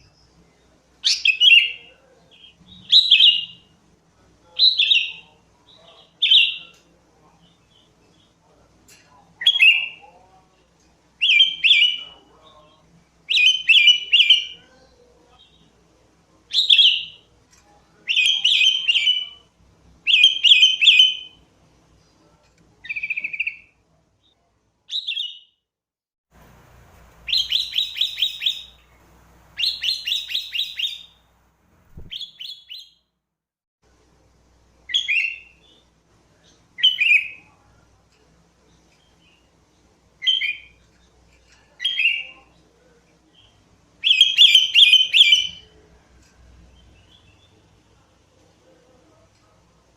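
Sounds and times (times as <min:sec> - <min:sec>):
bird chirping: 0:26.4 - 0:33.0.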